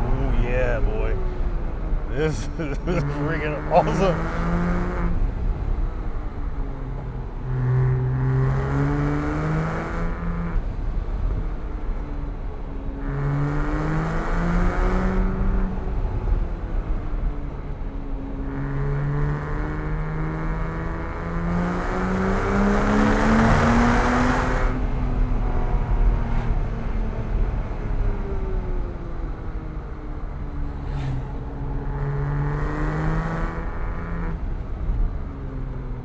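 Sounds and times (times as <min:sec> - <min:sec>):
car engine accelerating: 0:00.0 - 0:11.2
road noise: 0:00.0 - 0:36.0.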